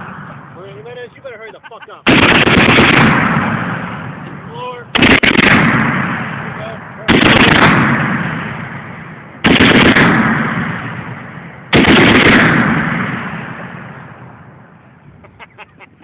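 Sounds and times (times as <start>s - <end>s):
rifle shots with rolling echo: 0.0s - 15.0s.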